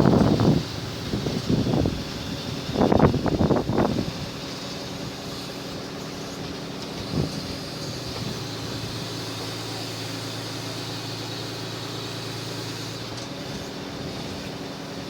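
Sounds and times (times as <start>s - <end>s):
engine low hum: 0.0s - 15.0s.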